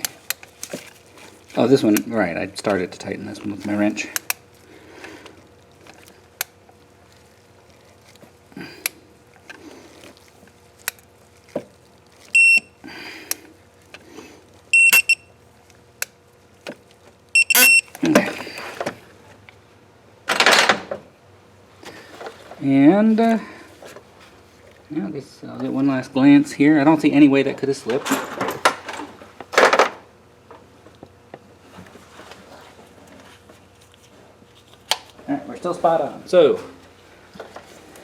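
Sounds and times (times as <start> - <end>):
short electronic beeps: 12.4 - 12.7, 14.8 - 15.3, 17.4 - 17.9.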